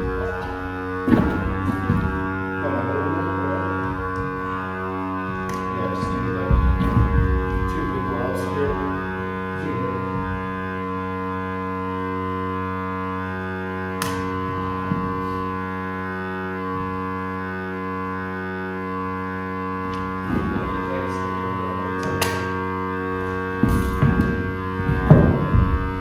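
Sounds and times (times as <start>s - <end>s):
music of sustained chords: 0.0s - 26.0s.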